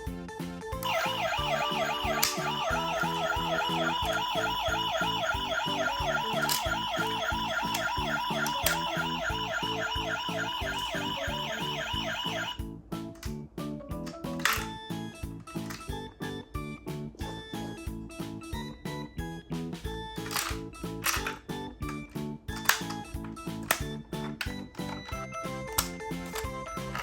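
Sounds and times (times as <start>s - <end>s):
background music with steady beat: 0.1s - 27.0s
ambulance siren warbling: 0.8s - 12.6s.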